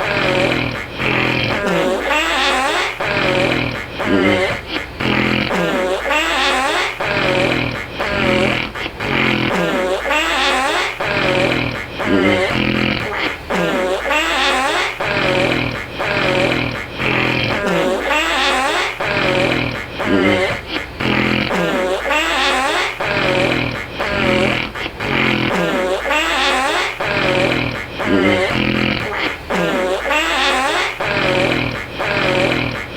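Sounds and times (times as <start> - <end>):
snoring with buzzing rattle: 0.0 - 1.9, 3.2 - 5.6, 11.2 - 13.2, 19.2 - 21.5, 27.2 - 29.1
fart-like snoring: 11.1 - 13.2, 27.1 - 29.2, 31.1 - 32.9.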